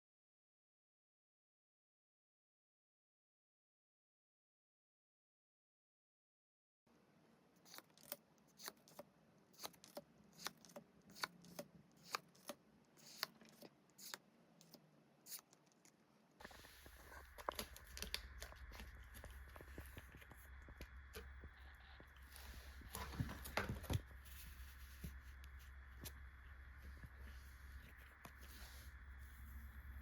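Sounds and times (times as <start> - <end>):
trading cards clicking and snipping: 7.7 - 15.8
steady hum: 16.4 - 30.0.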